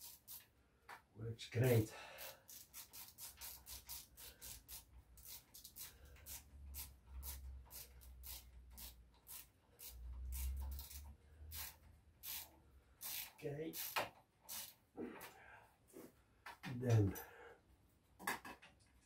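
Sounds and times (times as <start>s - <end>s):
ratchet wrench clicking: 2.2s - 14.8s.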